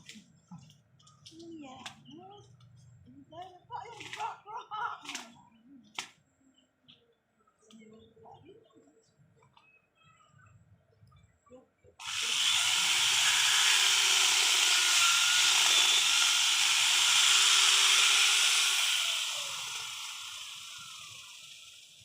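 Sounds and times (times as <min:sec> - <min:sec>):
angle grinder hissing rush: 0:12.0 - 0:22.0.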